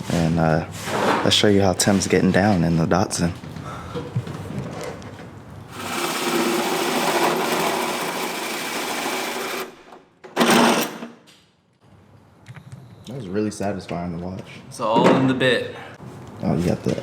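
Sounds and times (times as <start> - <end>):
power drill cutting through steel: 5.7 - 9.8.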